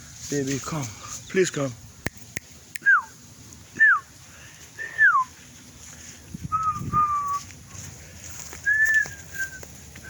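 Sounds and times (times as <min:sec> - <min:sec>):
whistled calls: 0:02.8 - 0:03.2, 0:03.8 - 0:04.1, 0:06.5 - 0:07.5, 0:08.6 - 0:10.0.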